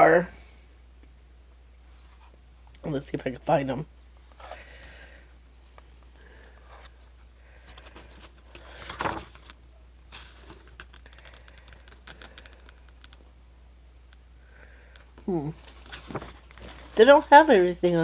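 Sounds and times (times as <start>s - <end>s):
packet rustle: 7.7s - 13.2s, 15.5s - 17.5s.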